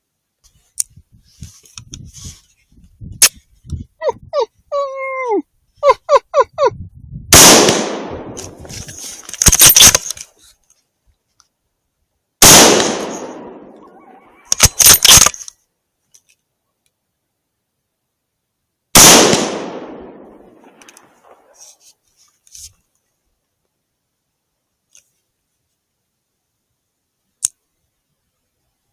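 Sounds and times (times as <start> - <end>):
gunshots with long echo: 7.3 - 8.6, 12.4 - 15.3, 19.0 - 21.6
animal yelps: 13.8 - 14.6
sharp clicks: 14.5 - 15.6.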